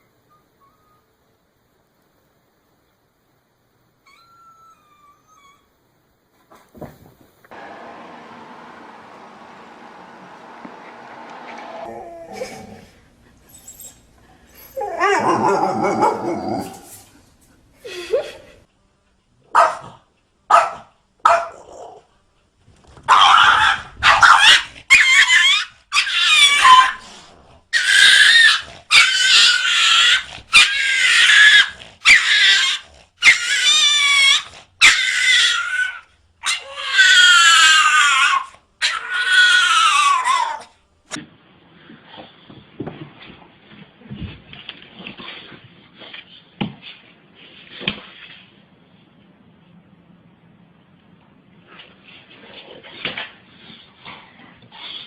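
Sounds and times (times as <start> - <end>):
dog low call: 7.5 - 14.0
dog howling: 7.6 - 14.0, 14.6 - 16.9, 23.1 - 27.1, 27.8 - 40.7
dog yipping: 13.5 - 16.8, 19.6 - 19.9, 20.5 - 21.6, 23.1 - 27.0, 27.8 - 40.7.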